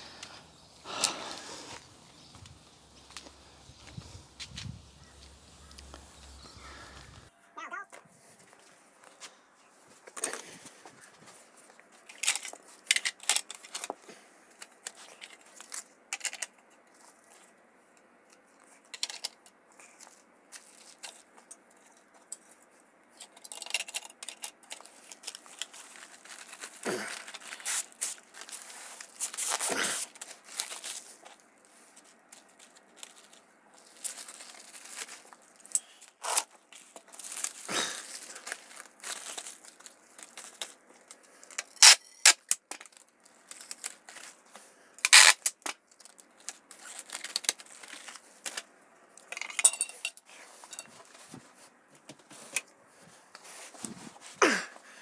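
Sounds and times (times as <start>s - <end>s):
plastic wrap tearing and crinkling: 24.3s - 48.7s.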